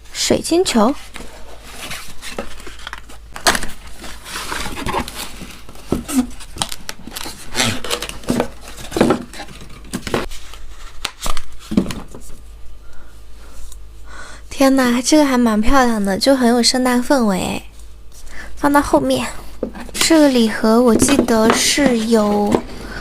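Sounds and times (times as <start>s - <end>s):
packaging crinkling and tearing: 1.2s - 11.6s.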